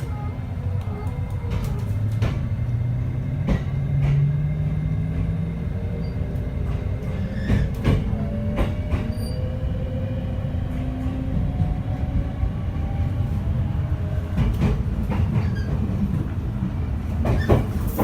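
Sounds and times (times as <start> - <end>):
train inverter and motors humming: 0.0 - 18.0
train running rumble: 0.0 - 18.0
wheels clacking over rail joints: 6.6 - 9.4, 17.2 - 18.0.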